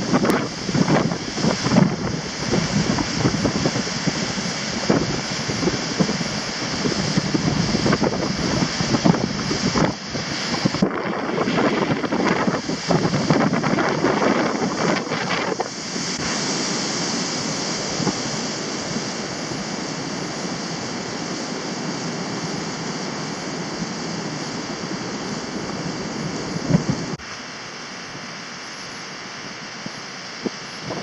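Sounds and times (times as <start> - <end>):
wind buffeting microphone: 0.0 - 27.3, 28.8 - 31.0
waterfall rushing: 0.0 - 31.0.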